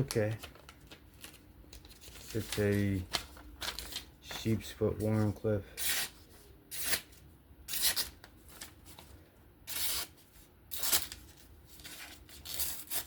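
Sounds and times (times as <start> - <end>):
knife slicing paper: 5.8 - 8.2, 9.7 - 13.0.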